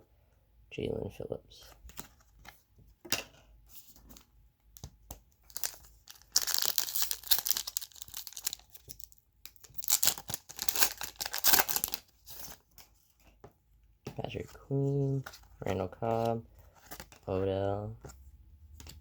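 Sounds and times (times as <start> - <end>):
wrapper crackling: 5.5 - 12.6.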